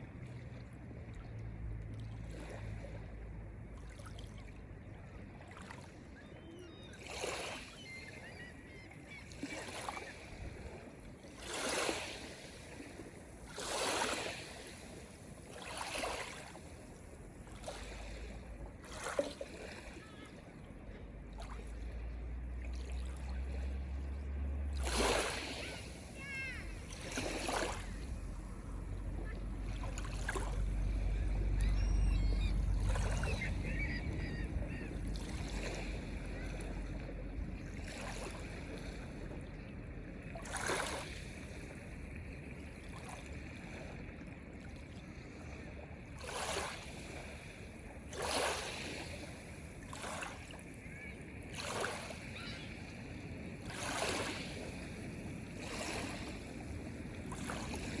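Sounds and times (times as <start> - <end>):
sea waves splashing: 1.6 - 58.0
wind rumble on microphone: 27.8 - 40.4.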